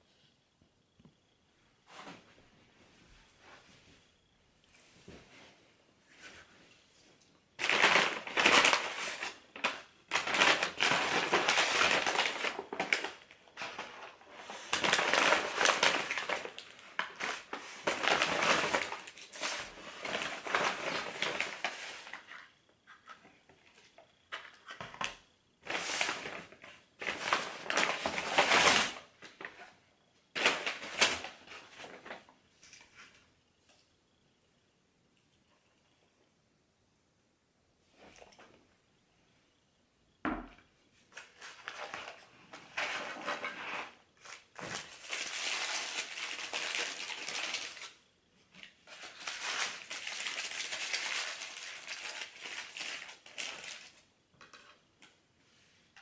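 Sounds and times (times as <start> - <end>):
paper packaging rustling: 7.6 - 23.2, 24.3 - 29.7, 30.3 - 33.2, 41.1 - 48.0, 48.6 - 54.6.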